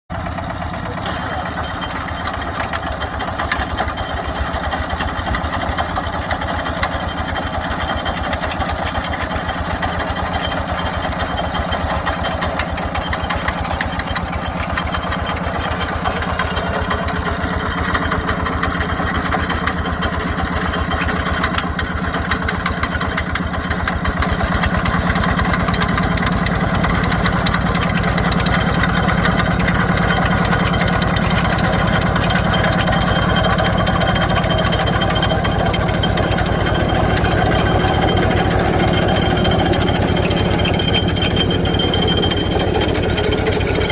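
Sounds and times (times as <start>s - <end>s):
dense rattle of clicks: 0.1s - 43.9s
tiller engine running: 0.1s - 43.9s.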